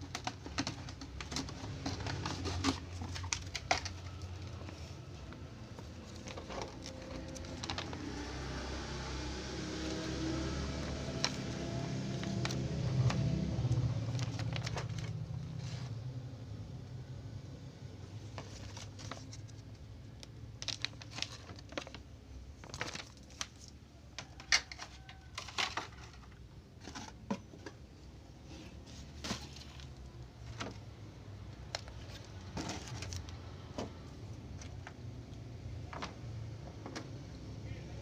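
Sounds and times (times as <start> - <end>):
packaging clicks: 0.0 - 8.5, 10.8 - 15.4
packaging crinkling: 0.0 - 15.8, 18.3 - 27.2, 31.6 - 35.0.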